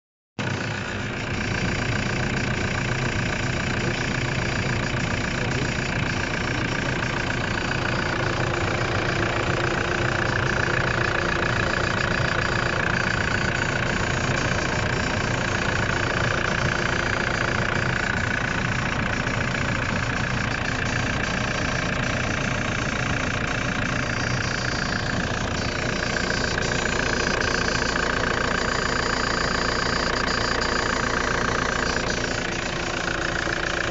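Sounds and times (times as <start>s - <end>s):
car engine idling: 0.4s - 33.9s
wavering high tone: 23.4s - 33.9s.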